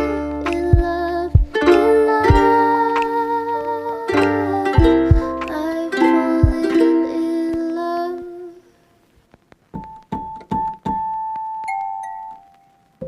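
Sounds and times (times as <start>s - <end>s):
low beat: 0.0s - 6.8s.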